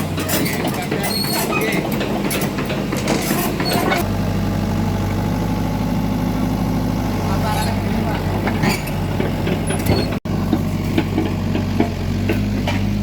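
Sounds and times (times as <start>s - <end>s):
clanking and rattling: 0.0s - 4.1s, 7.2s - 13.0s
heavy diesel engine running: 0.0s - 13.0s.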